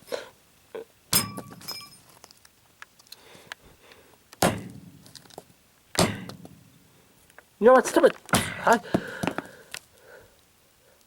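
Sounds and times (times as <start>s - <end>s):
metallic ring: 1.1s - 2.1s
hammer blows on metal stapler: 4.4s - 5.0s, 6.0s - 6.5s.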